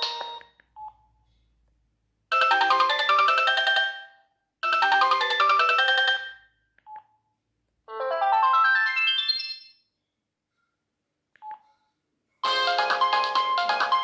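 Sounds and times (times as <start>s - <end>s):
mobile phone ringtone: 0.0s - 0.5s, 2.3s - 6.5s, 12.4s - 14.0s.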